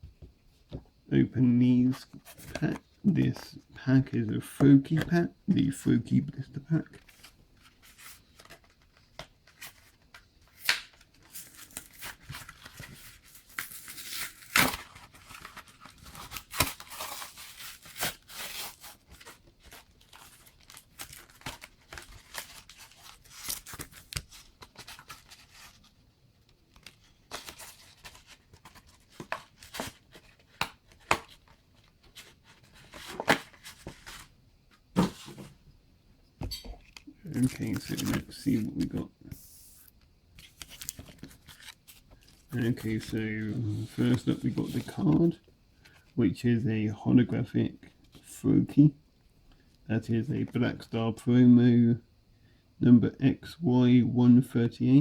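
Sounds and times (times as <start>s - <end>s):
blister pack tearing: 10.6s - 19.3s.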